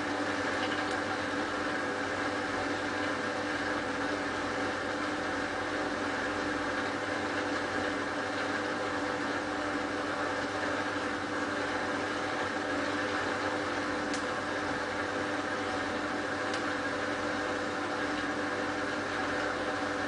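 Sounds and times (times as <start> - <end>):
washing machine spinning: 0.0 - 20.0.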